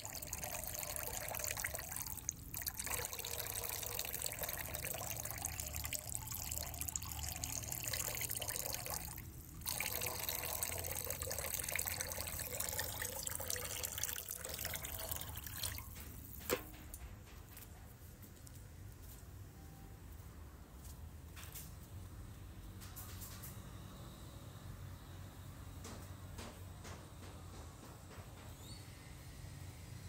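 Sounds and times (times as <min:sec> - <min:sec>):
water trickling: 0:00.0 - 0:16.6.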